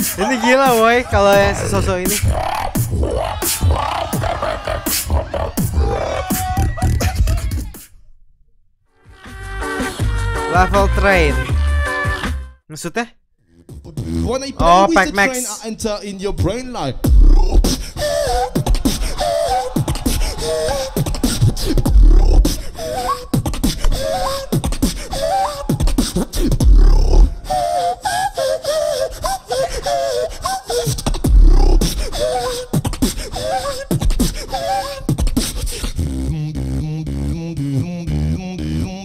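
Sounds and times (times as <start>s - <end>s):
deep bass kick: 17.0s - 17.8s, 21.8s - 22.5s, 26.6s - 27.3s, 31.3s - 31.9s
beatboxing mouth clicks and snares: 17.0s - 27.4s, 30.4s - 39.0s
warbling whistle-like vocal tone: 17.4s - 32.7s.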